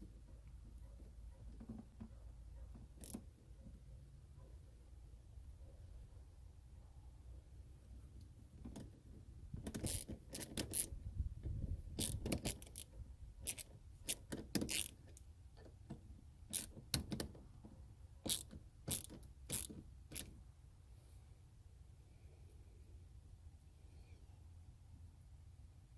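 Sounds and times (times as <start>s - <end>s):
hand tools clicking and scraping: 12.0s - 17.4s, 18.3s - 20.4s.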